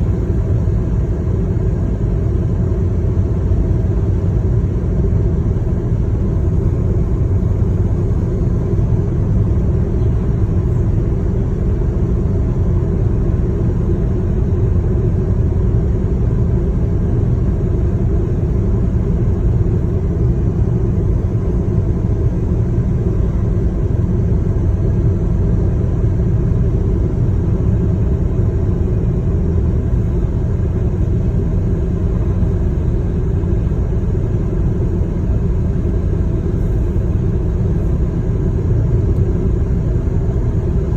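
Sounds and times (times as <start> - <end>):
vehicle engine and road noise: 0.0 - 40.9.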